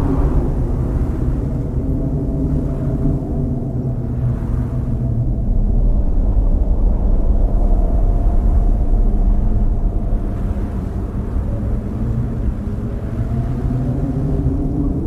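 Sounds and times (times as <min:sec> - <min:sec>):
blizzard wind rushing: 0:00.0 - 0:15.0
faint hum: 0:00.0 - 0:15.0.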